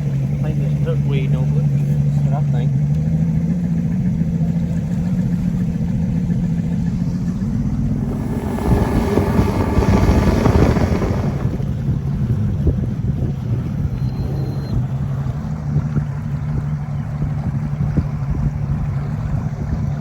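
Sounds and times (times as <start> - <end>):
boat motor humming: 4.7 - 12.0
rush of wind and water: 7.9 - 11.9.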